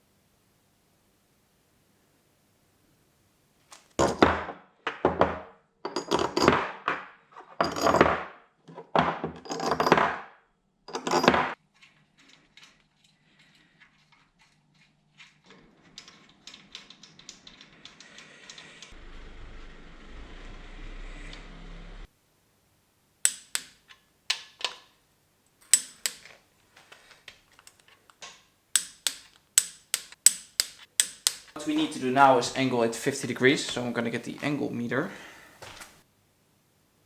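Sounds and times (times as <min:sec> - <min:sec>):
light metallic clicks and taps: 0:25.6 - 0:31.9.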